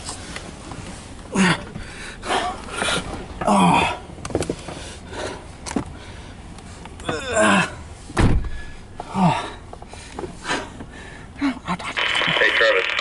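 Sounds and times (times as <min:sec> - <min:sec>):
heavy thump: 0:08.1 - 0:08.8.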